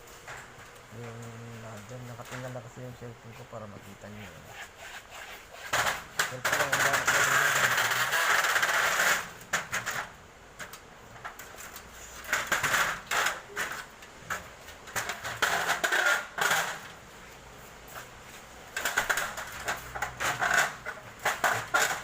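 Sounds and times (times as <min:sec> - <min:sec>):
clicks and clattering knocks: 0:05.7 - 0:08.6.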